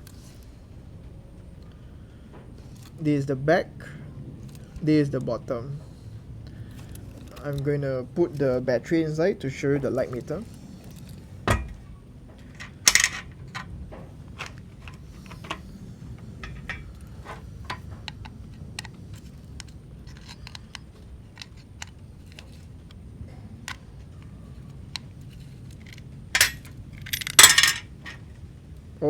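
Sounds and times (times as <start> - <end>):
scraping clatters: 10.4 - 22.8, 25.2 - 28.3
camera clicks and metallic rattles: 12.4 - 13.7, 16.4 - 23.0.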